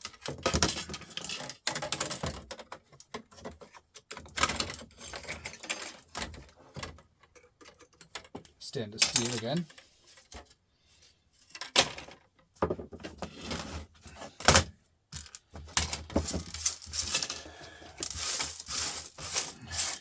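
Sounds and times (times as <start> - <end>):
scraping and rustling: 12.9 - 14.5, 15.2 - 20.0
knocks and clatters: 14.4 - 17.4.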